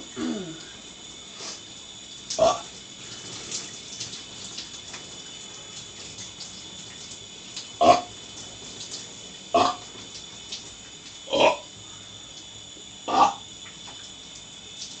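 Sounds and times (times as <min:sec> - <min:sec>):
shower running: 0:00.0 - 0:15.0
loud burps: 0:00.1 - 0:00.7, 0:02.4 - 0:02.7, 0:07.8 - 0:08.1, 0:09.5 - 0:09.8, 0:11.3 - 0:11.7, 0:13.1 - 0:13.4.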